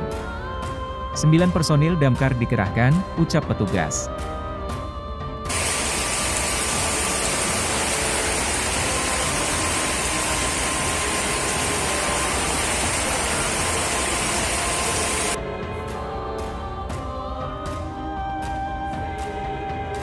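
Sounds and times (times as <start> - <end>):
heavy rain: 5.5 - 15.4.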